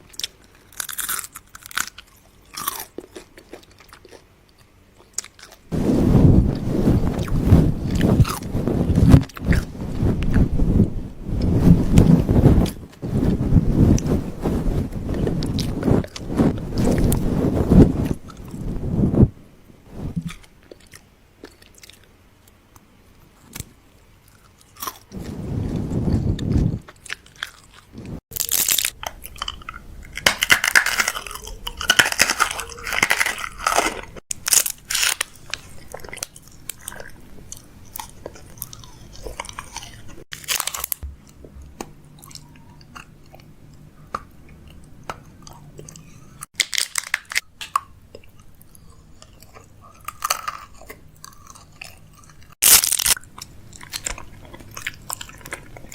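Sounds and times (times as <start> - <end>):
crisp crunching and clicking: 0.0 - 5.7, 26.5 - 43.4, 44.1 - 55.9
dull low rumble: 5.7 - 20.3, 41.0 - 42.6.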